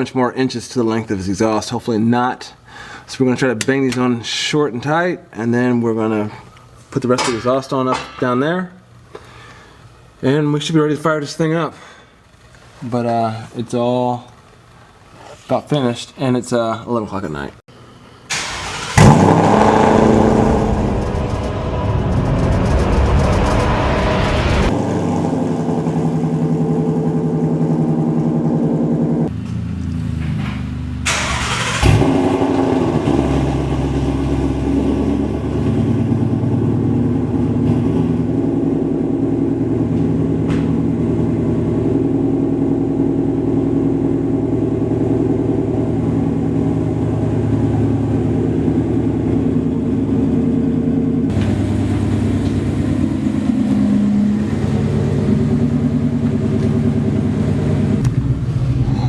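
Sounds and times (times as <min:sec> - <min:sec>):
exhaust crack: 0:18.3 - 0:59.0
straight-piped engine running: 0:18.4 - 0:59.0.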